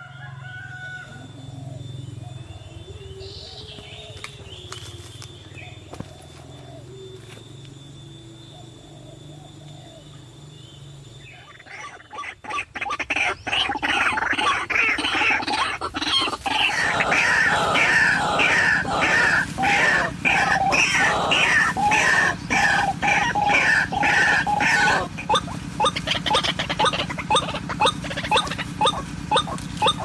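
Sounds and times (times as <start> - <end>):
bird harsh repeated calls: 11.3 - 30.0.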